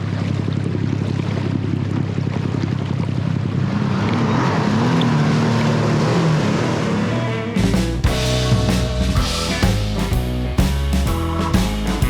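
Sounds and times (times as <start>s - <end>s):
boat engine running: 0.0s - 12.0s
wavering high engine note: 6.4s - 10.2s.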